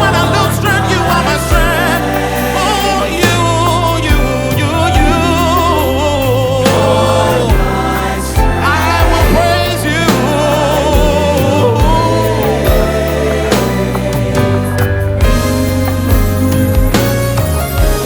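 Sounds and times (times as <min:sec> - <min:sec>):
vocalists singing: 0:00.0 - 0:17.0
band with keyboards bass and drums: 0:00.0 - 0:18.0.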